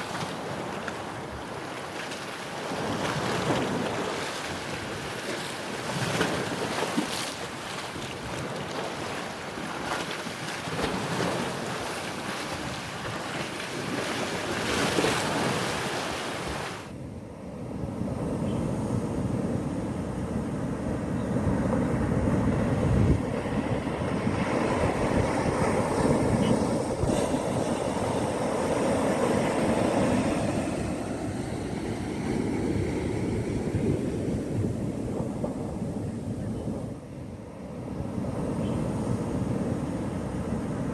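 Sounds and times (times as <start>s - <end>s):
sea waves breaking on shore: 0.0s - 16.9s.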